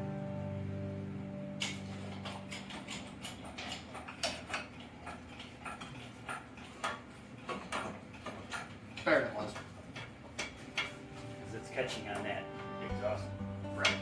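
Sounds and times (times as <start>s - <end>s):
low steady hum: 0.0s - 5.4s, 8.9s - 14.0s.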